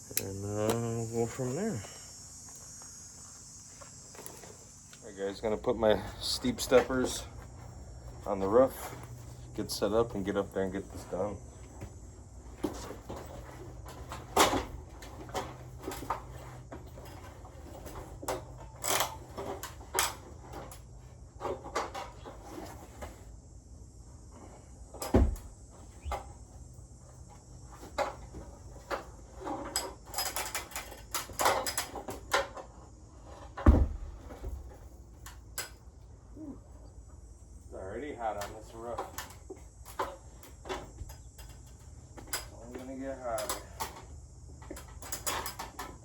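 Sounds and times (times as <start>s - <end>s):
knocks clatter and scrapes: 12.5s - 23.3s, 27.7s - 34.9s
heavy thumps: 33.6s - 34.8s.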